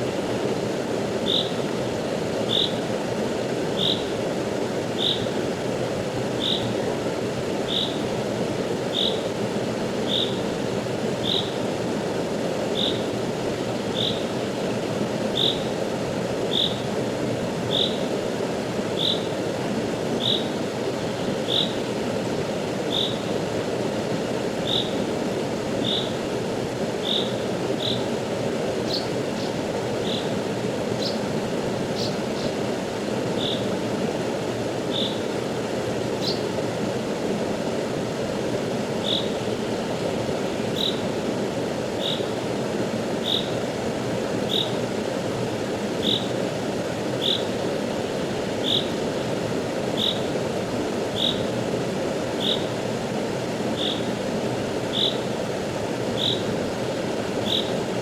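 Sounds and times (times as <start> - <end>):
river flowing: 0.0 - 58.0
small animal chirping: 1.3 - 1.5, 6.4 - 6.6, 43.2 - 43.5, 50.0 - 50.2, 52.4 - 52.6, 56.2 - 56.4, 57.4 - 57.7.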